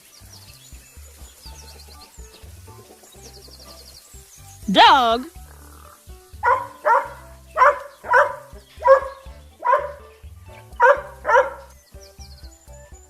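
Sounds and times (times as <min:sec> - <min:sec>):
dog barking: 0:06.4 - 0:10.1, 0:10.8 - 0:11.7.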